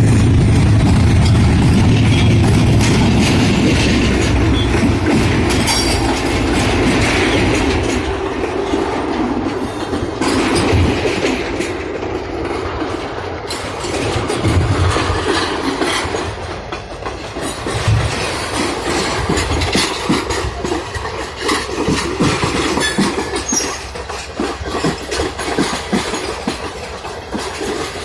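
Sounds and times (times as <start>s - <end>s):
diesel locomotive rumble: 0.0s - 28.0s
train wheels clattering over rail joints: 0.0s - 28.0s
train wheels squealing: 2.0s - 2.6s, 4.5s - 4.9s, 22.0s - 26.6s.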